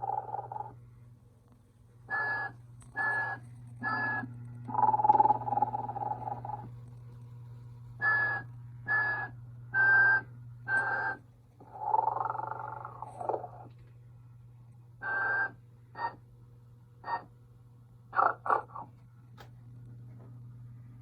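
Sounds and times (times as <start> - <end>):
toy snoring: 0.0 - 0.8, 3.0 - 6.7, 10.7 - 13.7, 18.1 - 18.9
low hum: 2.0 - 21.0
whistle toots: 8.0 - 11.2.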